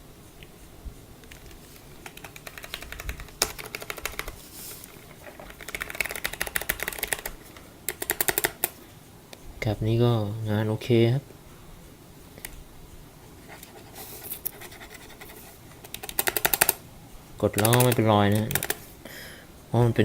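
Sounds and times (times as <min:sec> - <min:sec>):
mechanical keyboard typing: 0:01.2 - 0:08.8, 0:13.7 - 0:16.8, 0:17.4 - 0:18.8.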